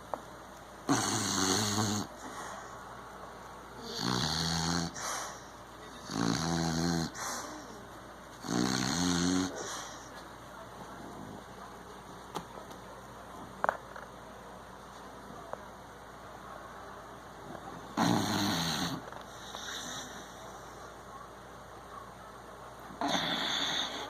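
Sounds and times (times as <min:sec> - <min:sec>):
dog snoring: 0:00.9 - 0:02.4, 0:03.8 - 0:07.8, 0:08.4 - 0:10.1, 0:18.0 - 0:20.4, 0:23.0 - 0:24.0.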